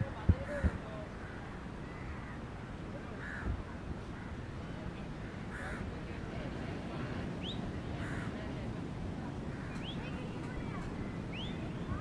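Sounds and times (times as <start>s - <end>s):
steady background noise: 0.0s - 12.0s
crow cawing: 3.2s - 3.5s, 8.0s - 8.4s.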